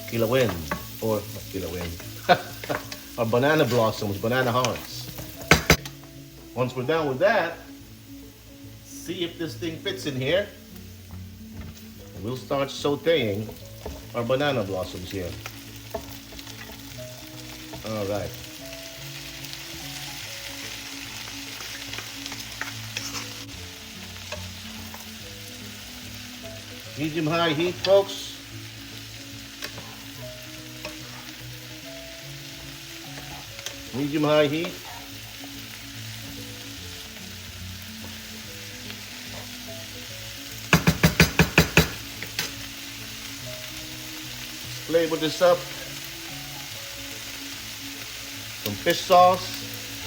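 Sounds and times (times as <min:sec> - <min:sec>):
food sizzling in fat: 0:00.0 - 0:50.0
utensil clicking against pan: 0:40.7 - 0:42.6.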